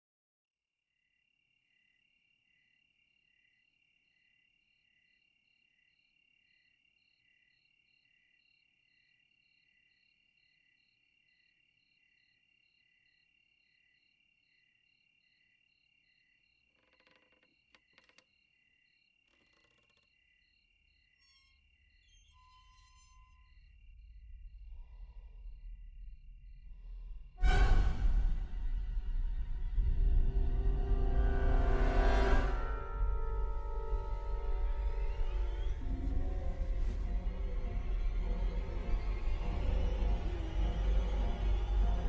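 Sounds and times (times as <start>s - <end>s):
crickets chirping: 1.0s - 27.4s, 32.4s - 42.0s
low rumble: 23.5s - 42.0s.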